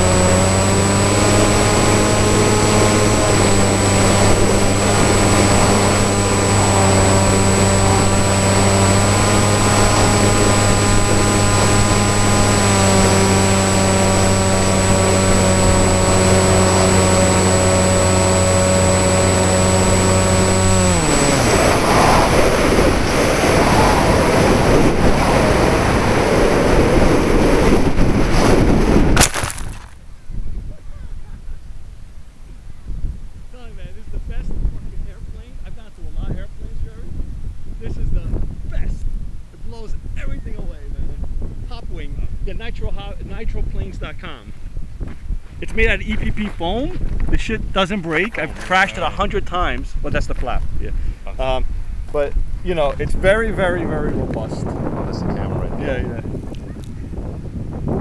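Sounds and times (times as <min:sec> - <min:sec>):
electric motor and propeller: 0:00.0 - 0:30.0, 0:45.0 - 0:50.8
rushing wind: 0:00.0 - 0:58.0.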